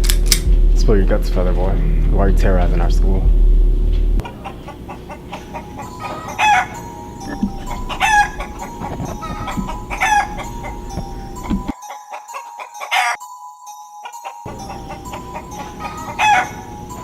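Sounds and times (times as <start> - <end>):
faint steady hum: 0.0 - 11.7
chicken clucking: 4.2 - 13.1, 14.5 - 16.8.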